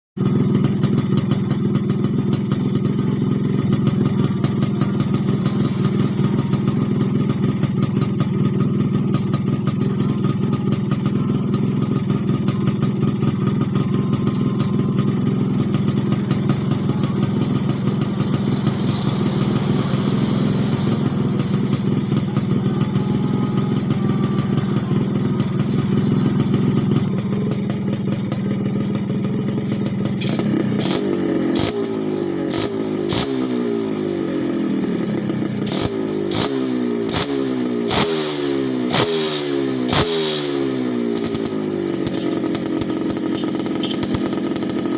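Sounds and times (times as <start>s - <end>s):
motorcycle engine idling: 0.2s - 44.9s.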